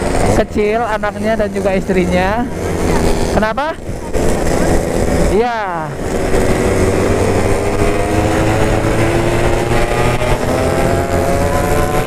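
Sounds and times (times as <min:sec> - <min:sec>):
two-stroke motorcycle engine: 0:00.0 - 0:12.0.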